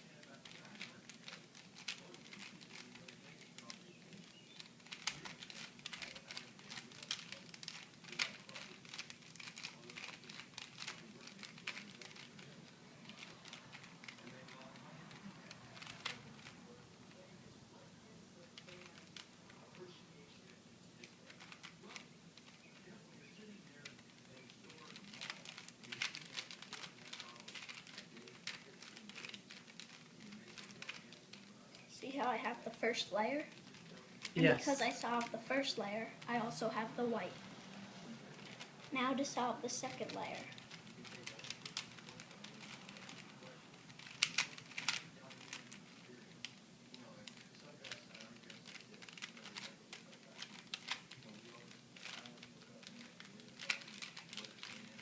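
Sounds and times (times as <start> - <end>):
puzzle cube plastic clicks: 0.2 - 16.6, 23.8 - 31.9, 35.0 - 35.4, 38.4 - 46.6, 47.2 - 55.0.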